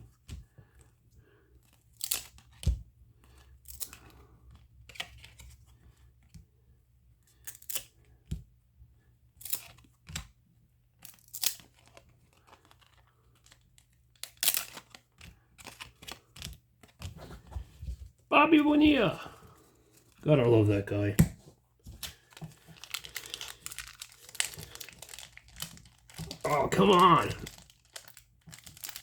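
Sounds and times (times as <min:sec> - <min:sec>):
wrappers tearing and crinkling: 0:11.1 - 0:16.4, 0:22.0 - 0:29.0.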